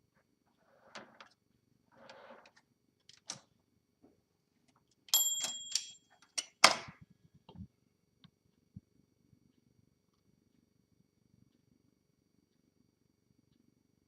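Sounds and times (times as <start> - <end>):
typewriter margin bell ding: 5.1 - 6.1.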